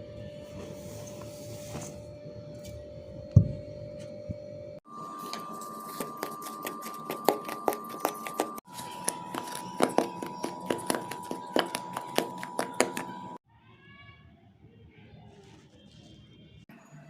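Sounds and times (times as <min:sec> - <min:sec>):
kitchen utensils clicking and scraping: 0:05.1 - 0:13.4.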